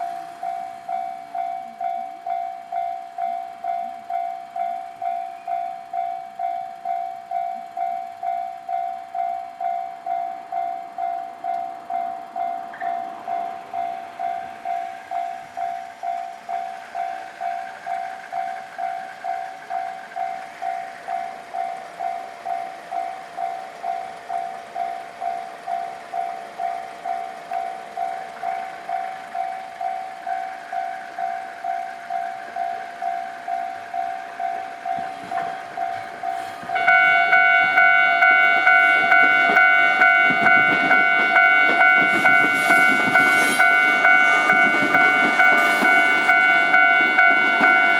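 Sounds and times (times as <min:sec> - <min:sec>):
approaching train rumble: 0:00.0 - 0:47.9
level-crossing alarm bell: 0:00.0 - 0:47.9
high-pitched chime: 0:33.6 - 0:47.9.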